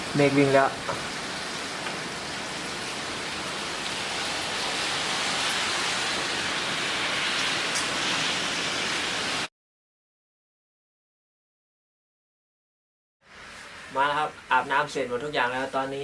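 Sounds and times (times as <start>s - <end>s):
heavy rain rushing: 0.0s - 9.5s.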